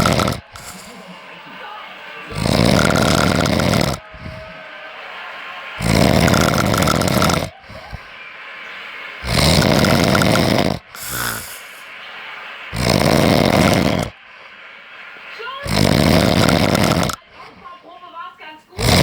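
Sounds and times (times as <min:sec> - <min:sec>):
person snoring loudly: 0:00.0 - 0:01.1, 0:02.3 - 0:04.6, 0:05.8 - 0:08.1, 0:09.2 - 0:11.8, 0:12.7 - 0:14.5, 0:15.6 - 0:17.6, 0:18.8 - 0:19.0
quiet breathing: 0:00.0 - 0:04.9, 0:05.8 - 0:12.0, 0:12.6 - 0:18.2.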